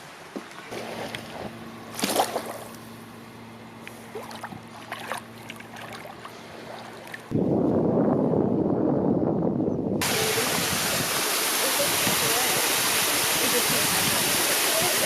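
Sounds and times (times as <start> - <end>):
low mechanical hum: 0.0 - 11.6
rush of water: 10.0 - 15.0.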